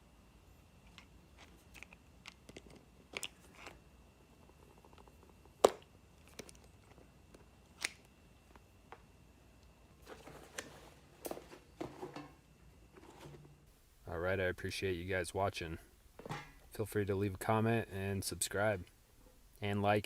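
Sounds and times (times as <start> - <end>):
small plastic clicks and crackles: 0.9 - 3.8.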